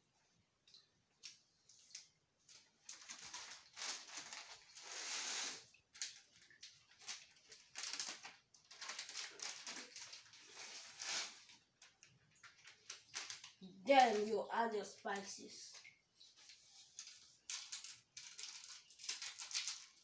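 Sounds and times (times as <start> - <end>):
plastic packets crinkling: 1.9 - 4.9, 5.9 - 14.3, 16.4 - 20.0.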